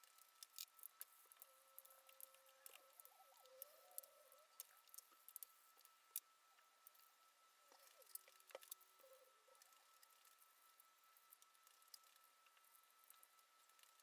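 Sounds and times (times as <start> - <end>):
faint clicks and ticks: 0.0 - 14.0.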